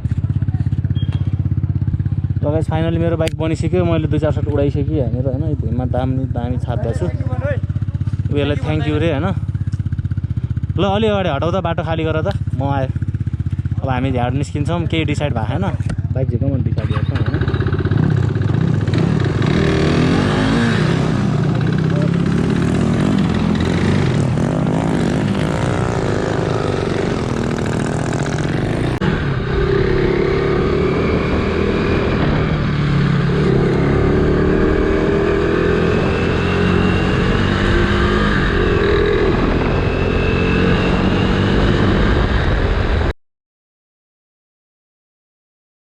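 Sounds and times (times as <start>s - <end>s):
dirt bike engine revving: 16.9s - 43.1s.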